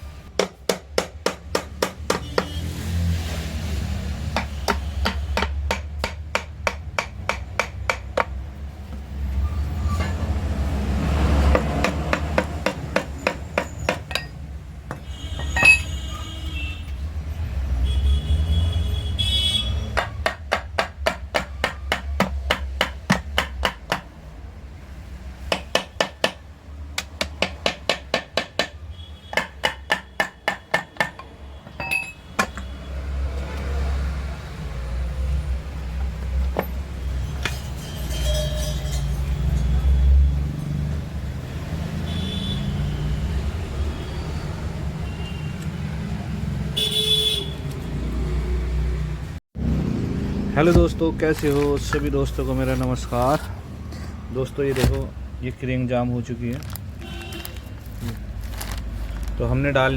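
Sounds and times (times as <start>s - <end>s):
hammer striking metal: 0.3s - 2.6s, 4.3s - 8.4s, 11.5s - 16.0s, 27.0s - 32.7s
ringing metallic clinks: 31.8s - 32.3s.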